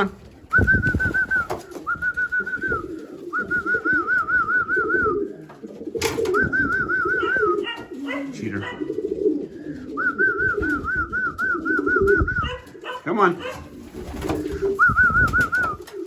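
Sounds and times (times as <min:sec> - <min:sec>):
pigeons cooing: 0:00.0 - 0:16.0
person whistling trilled whistles: 0:00.5 - 0:05.2, 0:06.3 - 0:07.6, 0:09.9 - 0:12.6, 0:14.7 - 0:15.8.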